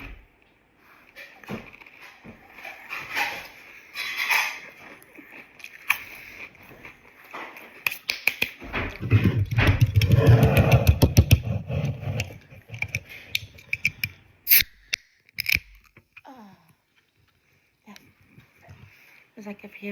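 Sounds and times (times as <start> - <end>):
chewing and crunching food: 0.3 - 8.2.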